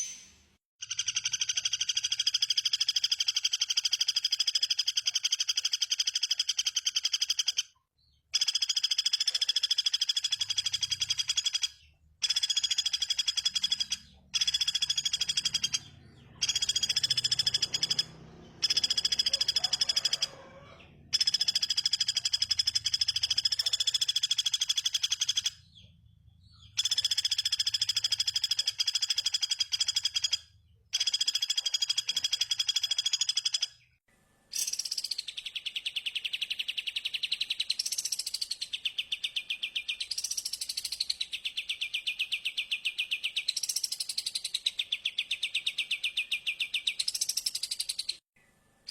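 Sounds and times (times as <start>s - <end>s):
bird pulsing chatter: 0.0s - 7.7s, 8.4s - 25.8s, 26.6s - 33.8s
songbird trilling: 8.4s - 33.7s.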